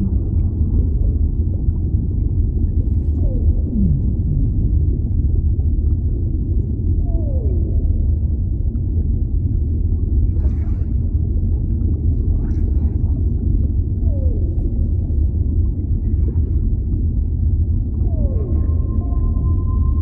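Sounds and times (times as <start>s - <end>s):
low underwater rumble: 0.0s - 20.0s
whale call moan: 3.1s - 5.0s, 18.0s - 20.0s.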